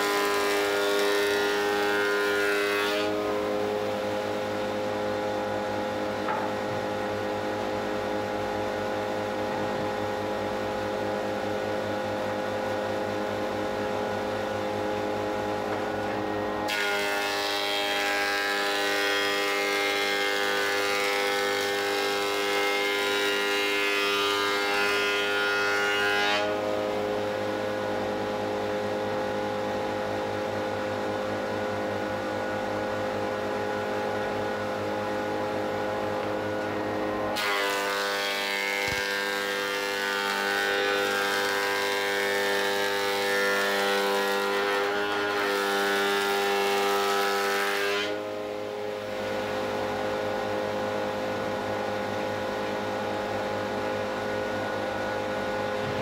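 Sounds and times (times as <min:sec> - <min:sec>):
planer hissing as board is cut: 0:00.0 - 0:48.3
planer motor humming: 0:51.5 - 0:56.0.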